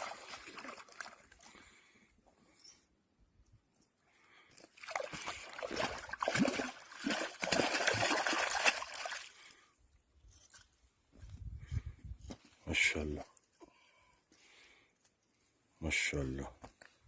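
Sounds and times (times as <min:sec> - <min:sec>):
water splashing and sloshing: 0:00.0 - 0:02.0, 0:04.3 - 0:09.7.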